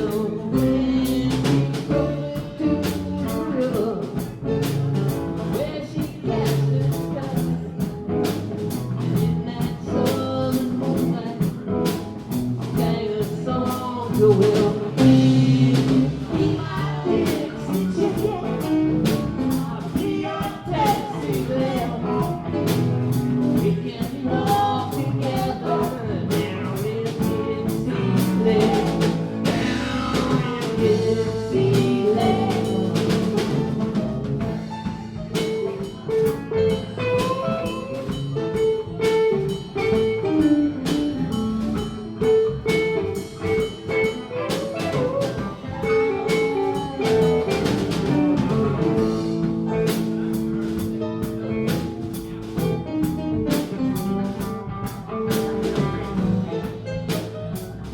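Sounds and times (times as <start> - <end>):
blues-rock band playing: 0.0 - 57.9
lead guitar bending notes: 25.0 - 57.9.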